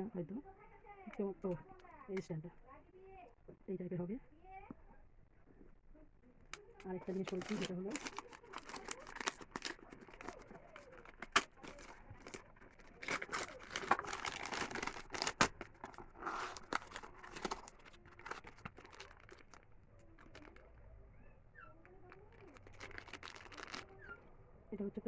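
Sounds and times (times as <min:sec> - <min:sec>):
packaging tearing and crinkling: 0:06.5 - 0:20.7, 0:21.8 - 0:24.2.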